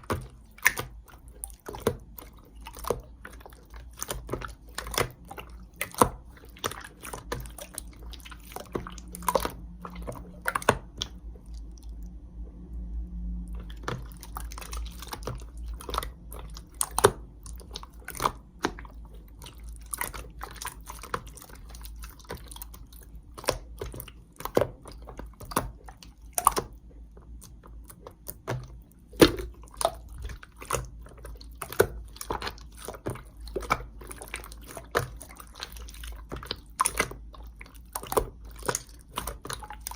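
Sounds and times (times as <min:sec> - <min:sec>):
slime squishing with clicks and pops: 0:00.0 - 0:12.2, 0:13.5 - 0:39.9
low hum: 0:08.8 - 0:17.6.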